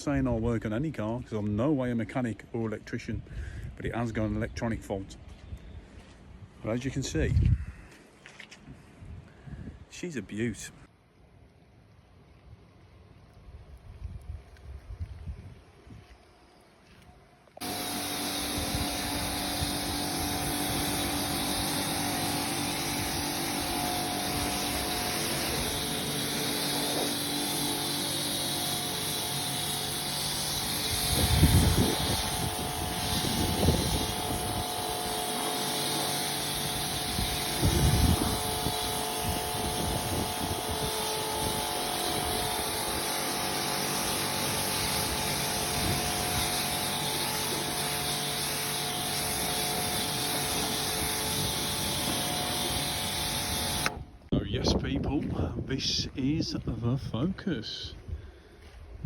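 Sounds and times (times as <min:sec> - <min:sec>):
water spray hissing: 0:17.6 - 0:54.0
pressure washer motor hum: 0:17.6 - 0:54.3.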